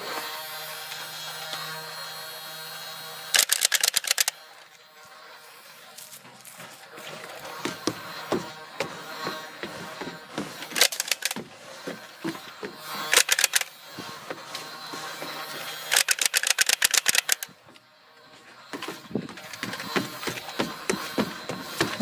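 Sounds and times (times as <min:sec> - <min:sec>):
toy blaster rapid clicks: 0:03.3 - 0:04.5, 0:10.6 - 0:11.4, 0:13.0 - 0:13.8, 0:15.6 - 0:17.6.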